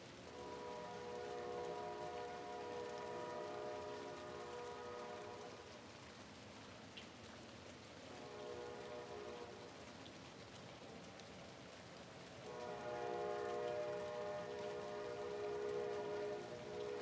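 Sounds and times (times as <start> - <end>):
rain on a window: 0.0 - 17.0
distant train horn: 0.3 - 5.8, 8.1 - 9.9, 12.4 - 17.0.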